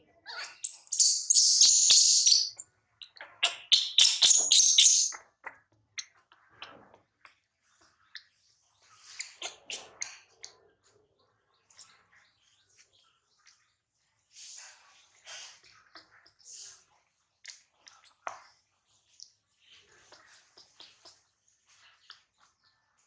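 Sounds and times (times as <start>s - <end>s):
baby monkey squealing: 0.3s - 2.6s, 3.5s - 5.1s.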